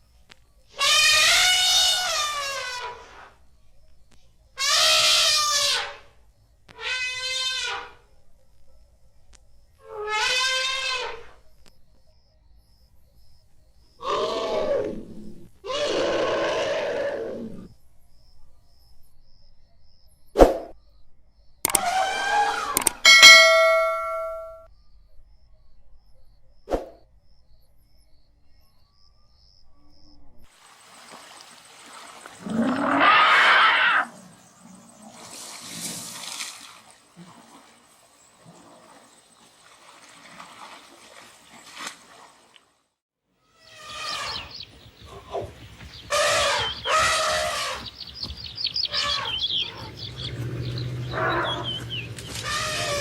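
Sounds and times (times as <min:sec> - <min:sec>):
elephant trumpeting: 0:00.8 - 0:03.1, 0:04.6 - 0:05.9, 0:09.9 - 0:11.2, 0:32.4 - 0:34.1, 0:43.6 - 0:44.6, 0:46.1 - 0:48.0, 0:48.8 - 0:53.0
elephant call: 0:00.8 - 0:03.2, 0:21.7 - 0:24.6, 0:43.5 - 0:53.0
birds chirping: 0:22.8 - 0:24.6, 0:43.6 - 0:53.0
bell-like chime: 0:23.1 - 0:24.7.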